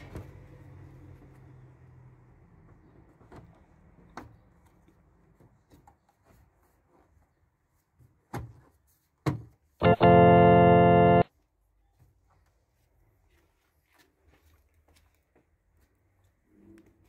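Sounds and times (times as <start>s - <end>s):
loud organ-like tone: 9.8s - 11.3s.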